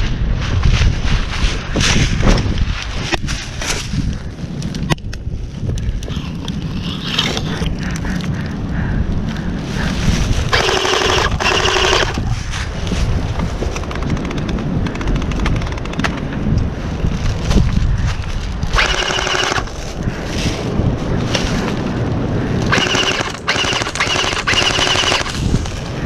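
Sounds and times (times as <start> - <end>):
wind on microphone: 0.0 - 26.0
airsoft gun firing bursts: 10.6 - 12.2, 18.8 - 19.7, 22.7 - 25.4.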